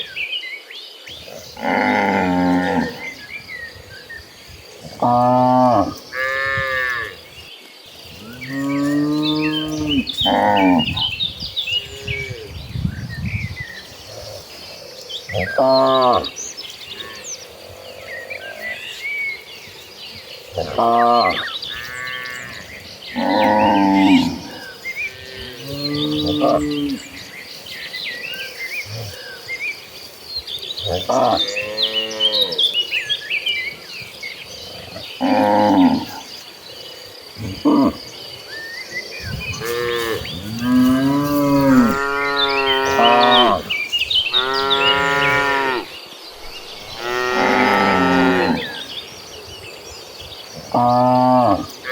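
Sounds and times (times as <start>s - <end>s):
faint birds chirping: 0.0s - 51.9s
insect drone: 0.0s - 51.9s
cattle mooing: 39.6s - 43.7s, 46.9s - 48.8s.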